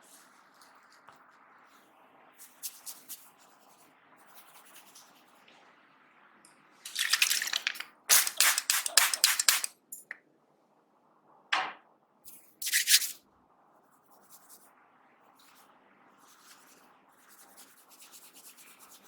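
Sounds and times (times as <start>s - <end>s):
hair crackling: 6.9s - 10.2s.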